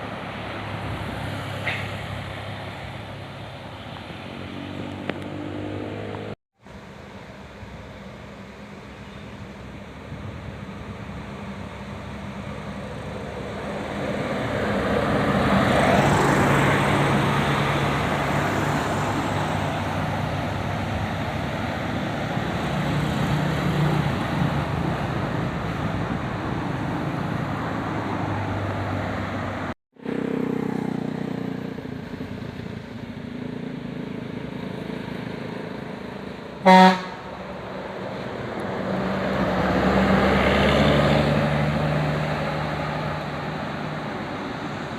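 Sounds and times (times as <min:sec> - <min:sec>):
bus passing by: 0:00.0 - 0:44.9
bus horn toot: 0:36.6 - 0:37.4.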